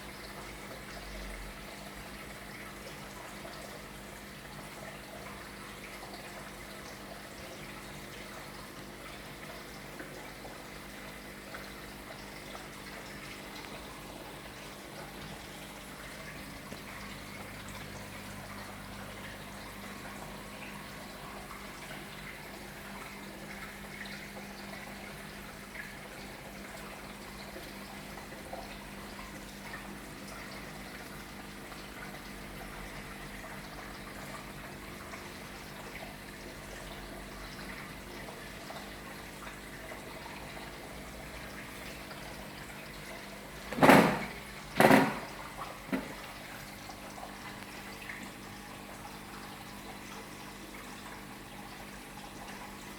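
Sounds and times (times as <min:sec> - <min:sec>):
aquarium water trickling: 0:00.0 - 0:52.9
faint electrical hum: 0:00.0 - 0:52.9
loud knocks: 0:43.8 - 0:45.3.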